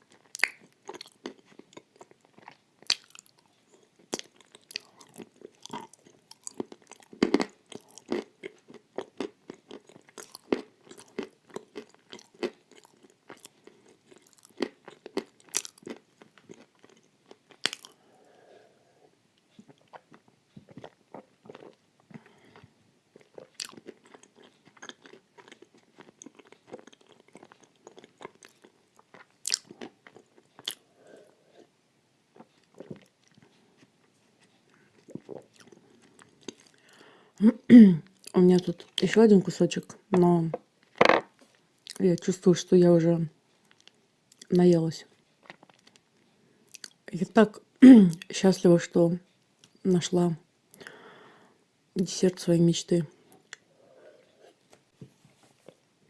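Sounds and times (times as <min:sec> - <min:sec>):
chewing and crunching: 0:00.0 - 0:18.1, 0:19.5 - 0:31.0, 0:32.3 - 0:37.0, 0:45.1 - 0:47.0.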